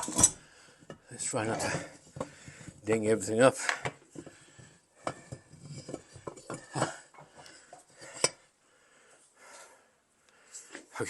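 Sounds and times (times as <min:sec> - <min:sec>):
metal engine parts clinking: 0:00.0 - 0:00.4, 0:05.0 - 0:08.4.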